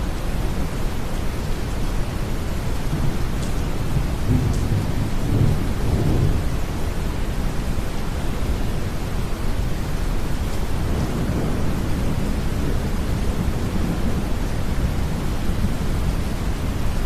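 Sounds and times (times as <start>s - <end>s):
steady rain: 0.0s - 17.0s
distant thunder rumble: 2.9s - 6.5s, 10.6s - 17.0s.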